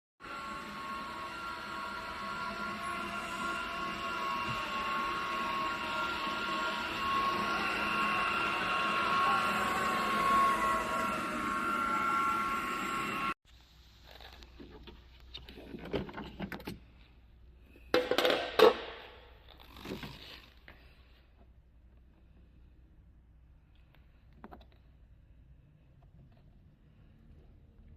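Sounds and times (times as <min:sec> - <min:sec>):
small electric motor whining: 0:00.2 - 0:13.4.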